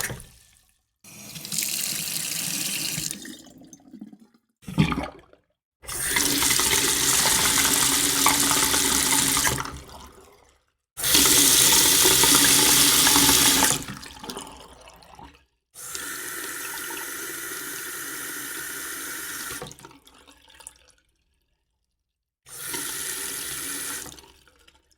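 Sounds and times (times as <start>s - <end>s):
water running in a sink: 0.0s - 4.2s, 5.9s - 10.3s, 11.0s - 15.2s, 15.8s - 20.3s, 22.5s - 24.4s.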